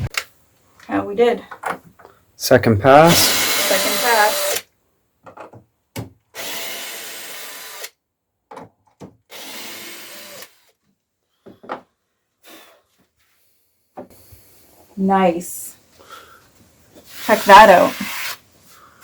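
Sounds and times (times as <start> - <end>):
power tool cutting wood: 3.0 - 4.6, 6.4 - 7.9, 9.3 - 10.7, 17.2 - 18.4.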